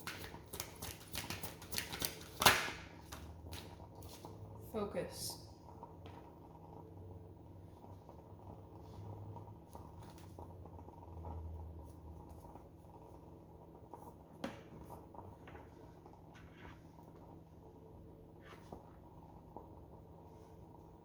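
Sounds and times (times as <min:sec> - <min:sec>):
cards rustling and clicking: 0:00.0 - 0:03.7.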